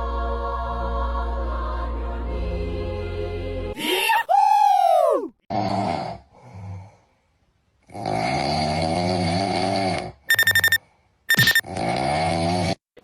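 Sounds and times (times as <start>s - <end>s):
cartoon snoring: 5.5s - 7.0s, 7.8s - 10.3s, 11.6s - 13.0s.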